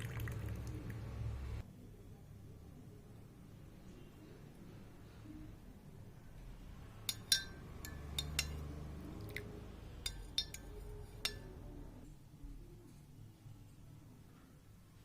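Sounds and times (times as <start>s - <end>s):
utensils clinking against crockery: 7.1s - 8.8s, 10.0s - 11.6s.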